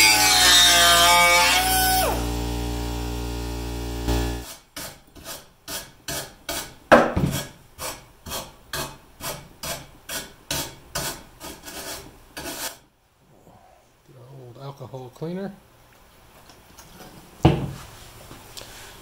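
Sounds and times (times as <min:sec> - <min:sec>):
sanding fiberglass by hand: 0:00.0 - 0:01.9, 0:07.4 - 0:12.8.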